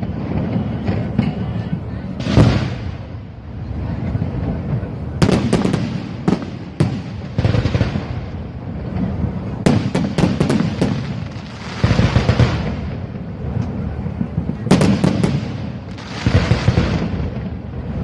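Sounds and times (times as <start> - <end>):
fireworks bangs: 0.0 - 18.0
fireworks crackling: 0.0 - 18.0.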